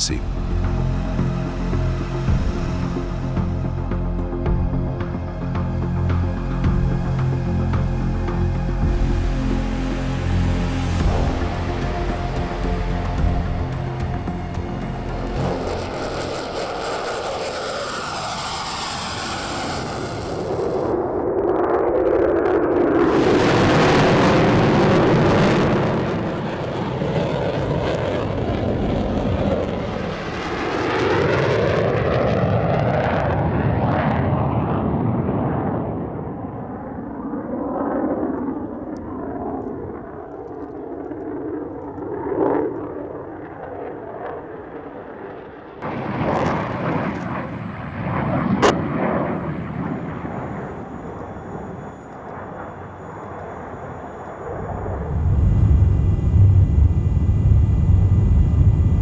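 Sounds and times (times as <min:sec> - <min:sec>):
jet aircraft flying past: 0:09.0 - 0:59.0.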